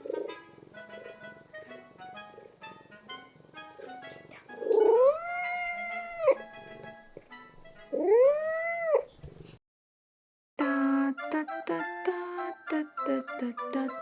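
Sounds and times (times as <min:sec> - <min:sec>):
light background music: 0:00.0 - 0:08.8, 0:10.6 - 0:14.0
cat meowing: 0:04.6 - 0:06.4, 0:07.9 - 0:09.1.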